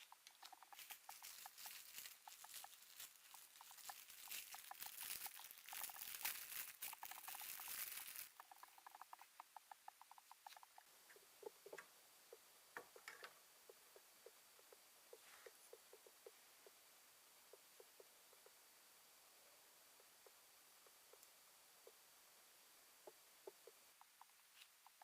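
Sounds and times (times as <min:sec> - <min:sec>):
rustling and crackling: 0:00.0 - 0:11.9.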